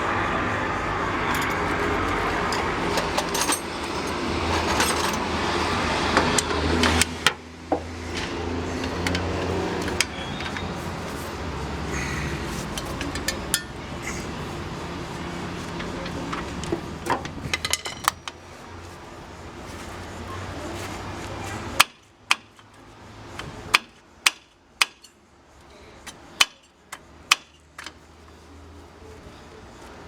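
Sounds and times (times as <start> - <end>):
screwdriver clicking on metal parts: 12.7 - 13.8.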